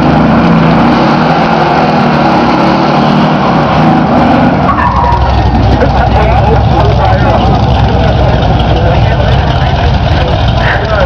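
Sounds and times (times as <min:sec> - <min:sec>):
truck engine running: 0:00.0 - 0:11.0.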